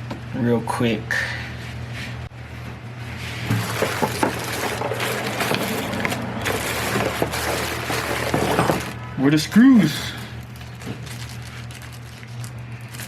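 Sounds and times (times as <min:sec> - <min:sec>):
steady low hum: 0:00.0 - 0:13.0
small hard parts clattering: 0:03.5 - 0:09.0.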